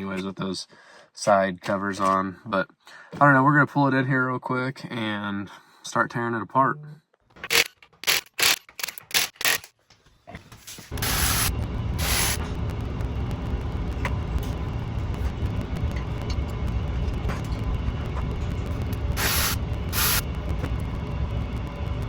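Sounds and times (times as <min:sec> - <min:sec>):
short hissy bursts: 0:11.0 - 0:12.4, 0:19.2 - 0:20.2.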